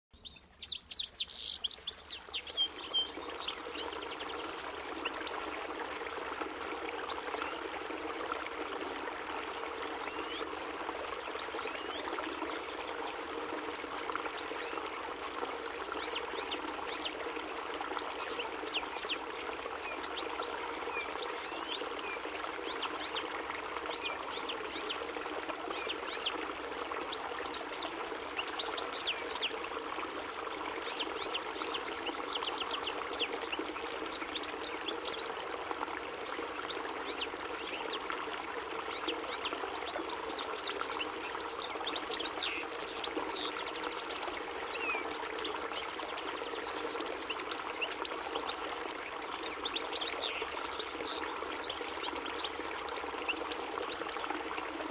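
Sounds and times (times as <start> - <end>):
goldfinch singing: 0.2 - 5.6.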